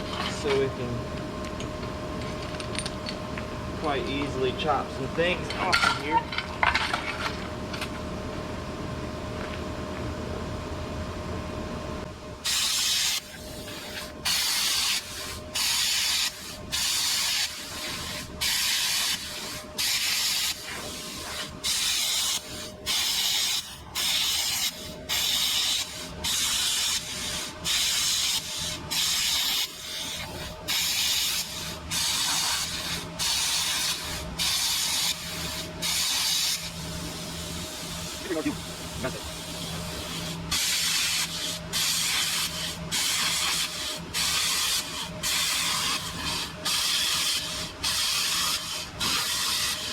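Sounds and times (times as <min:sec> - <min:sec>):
plasma cutter hissing bursts: 0:12.4 - 0:49.9.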